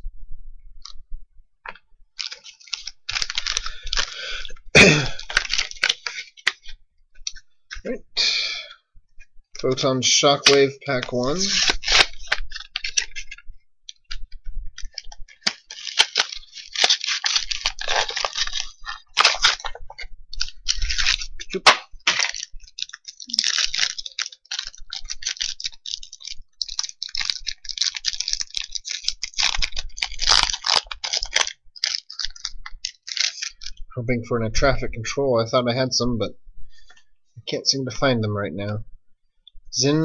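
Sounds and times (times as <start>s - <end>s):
foil wrapper tearing and crinkling: 2.2s - 6.8s, 10.3s - 33.8s.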